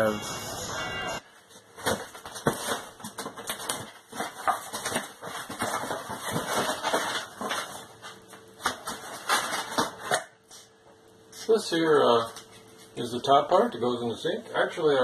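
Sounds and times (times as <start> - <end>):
packaging rustling: 1.4 - 10.2.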